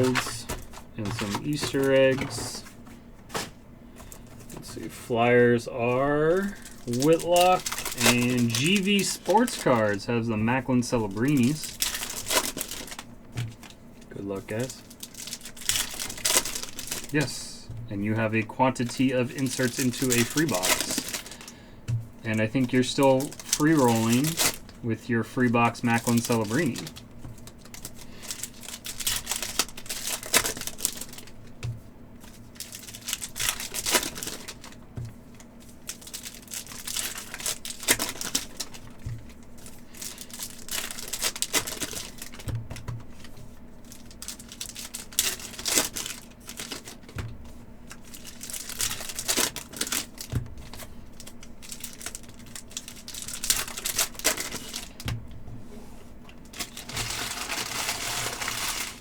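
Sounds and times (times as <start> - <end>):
foil wrappers crinkling and tearing: 0.0 - 55.3, 56.3 - 59.0.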